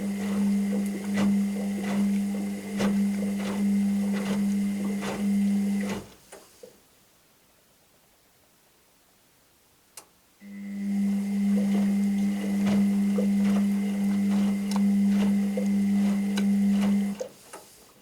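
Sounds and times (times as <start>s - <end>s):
washing machine motor hum: 0.0s - 6.2s, 10.4s - 17.6s.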